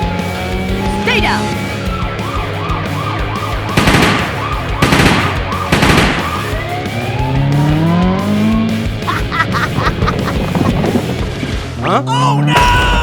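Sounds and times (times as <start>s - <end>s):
warbling police siren: 0.0s - 8.8s
background music: 0.0s - 12.5s
car engine revving: 0.0s - 12.6s.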